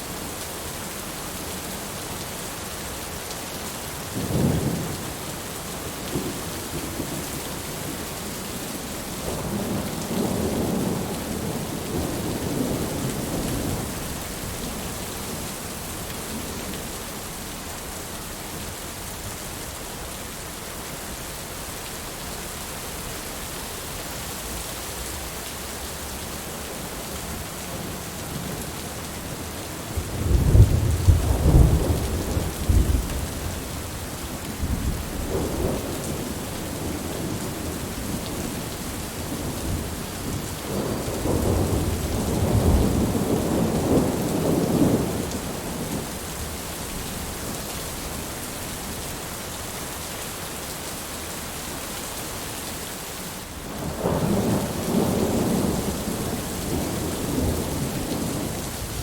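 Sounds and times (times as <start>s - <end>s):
heavy rain hissing: 3.6s - 52.6s, 53.2s - 59.0s
thunder rumbling: 27.4s - 33.7s, 34.6s - 46.1s, 53.8s - 59.0s.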